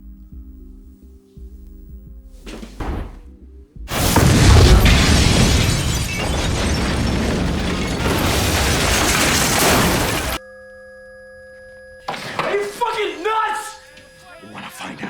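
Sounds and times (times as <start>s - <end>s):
loud explosion blast: 3.9s - 10.4s
rumbling crashing noise: 3.9s - 10.4s.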